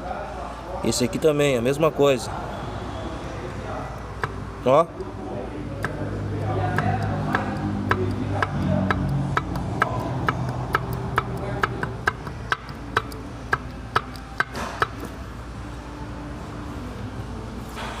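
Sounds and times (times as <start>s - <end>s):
steady low hum: 2.3s - 17.9s
sharp metal clicks: 5.8s - 15.1s.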